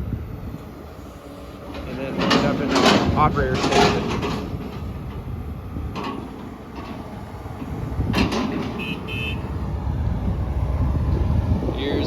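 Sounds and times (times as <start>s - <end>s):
excavator diesel engine rumbling: 0.0s - 12.0s.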